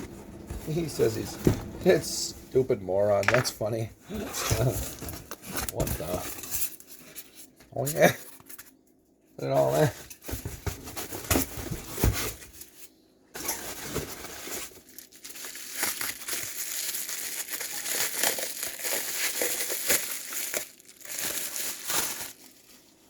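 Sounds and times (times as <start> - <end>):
packing material crumpling: 13.4 - 23.0.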